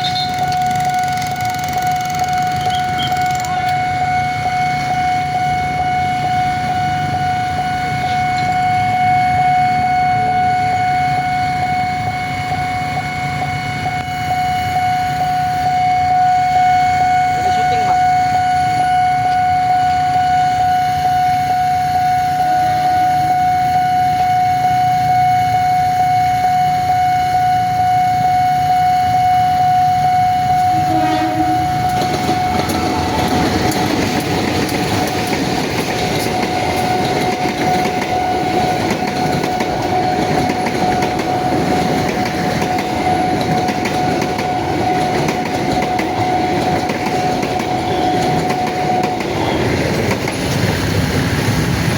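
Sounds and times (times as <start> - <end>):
train wheels clattering on rails: 0.0 - 4.0, 30.6 - 51.9
level crossing warning siren: 0.0 - 51.9.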